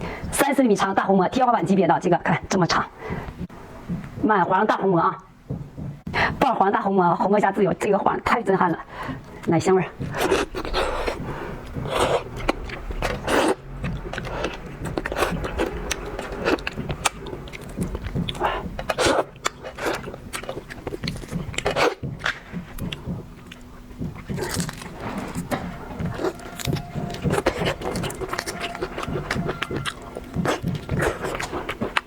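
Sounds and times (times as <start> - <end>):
biting and chewing shrimp: 10.0 - 32.0.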